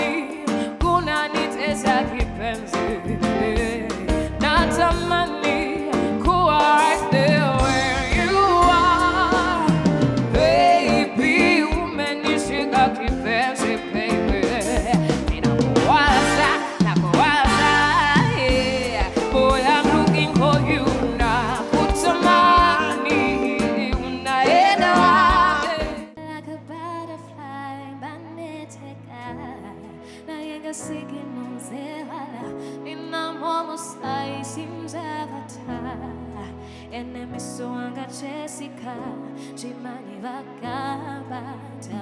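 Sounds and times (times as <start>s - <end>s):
live band music: 0.0s - 26.1s.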